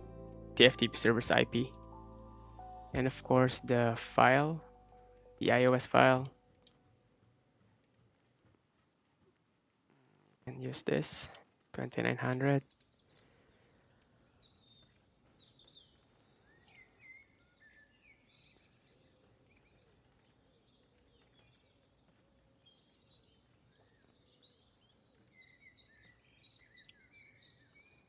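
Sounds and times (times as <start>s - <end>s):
faint birds chirping: 10.4s - 28.0s.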